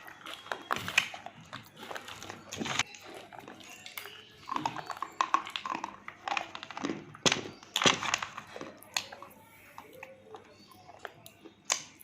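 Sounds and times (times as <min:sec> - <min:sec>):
crunching chalky material: 0:00.0 - 0:11.9.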